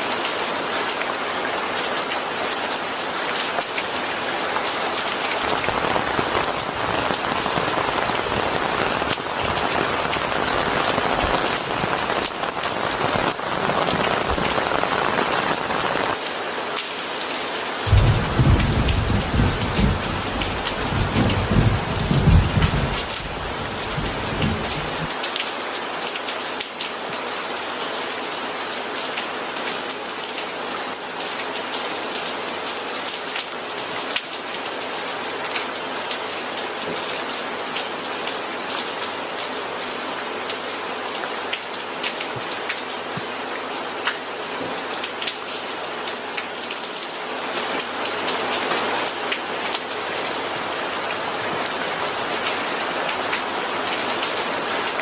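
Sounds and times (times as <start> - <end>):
steady rain falling: 0.0 - 55.0
low rumble of thunder: 17.9 - 25.1.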